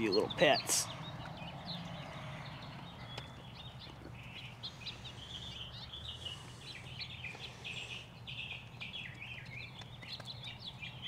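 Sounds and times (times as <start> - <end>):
birds chirping and singing: 0.0 - 11.0.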